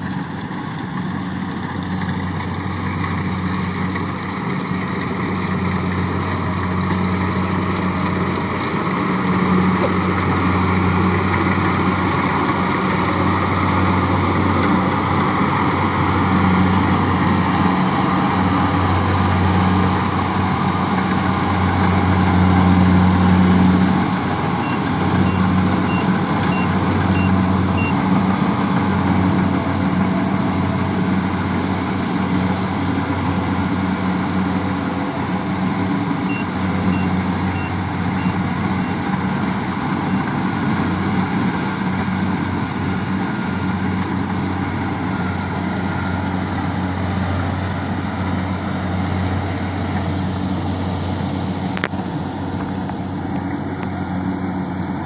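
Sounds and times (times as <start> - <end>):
harvester engine droning: 0.0 - 55.0
short high warning beeps: 24.6 - 28.0, 36.3 - 38.4.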